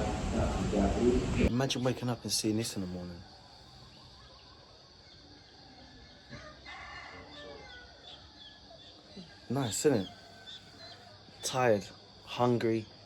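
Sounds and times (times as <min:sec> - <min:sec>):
rooster crowing: 0:06.2 - 0:08.2.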